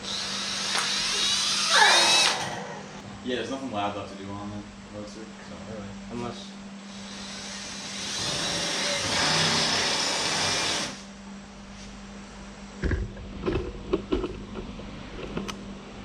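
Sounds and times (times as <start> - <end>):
power tool whirring: 0.0 - 2.7, 6.9 - 11.1
steady low hum: 10.8 - 16.0
sharp knocks and clunks: 12.8 - 15.5.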